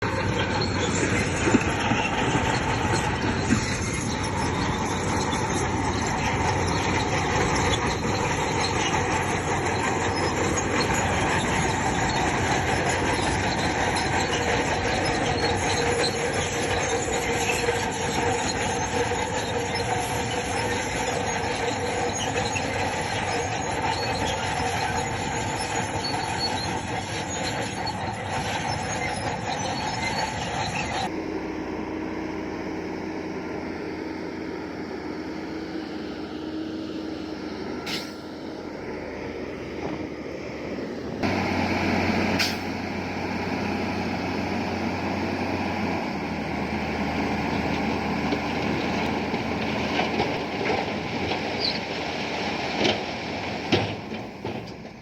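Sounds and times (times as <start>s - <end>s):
bulldozer diesel engine under load: 0.0s - 55.0s
steel tracks squealing and clanking: 0.0s - 55.0s
sharp metallic knocks: 37.8s - 38.4s.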